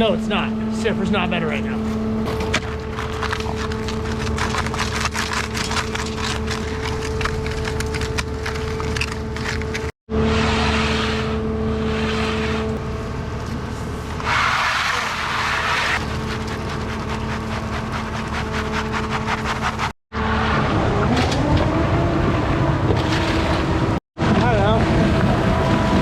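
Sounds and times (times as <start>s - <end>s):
truck engine drone: 0.0s - 26.0s
concrete mixer crackling and rattling: 1.3s - 9.9s, 13.4s - 20.0s.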